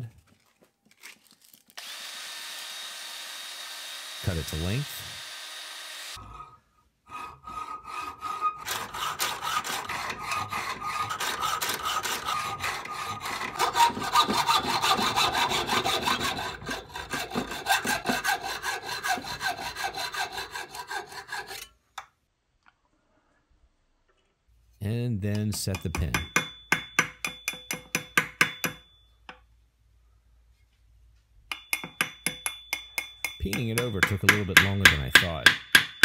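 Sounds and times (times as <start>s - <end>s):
hand saw cutting metal rod: 7.1s - 21.8s, 25.7s - 28.8s, 31.5s - 36.0s.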